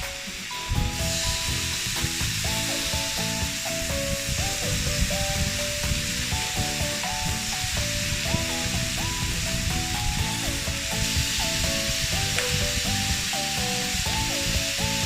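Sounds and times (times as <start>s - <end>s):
background music with beat: 0.0s - 15.0s
meat sizzling on a grill: 0.0s - 15.0s.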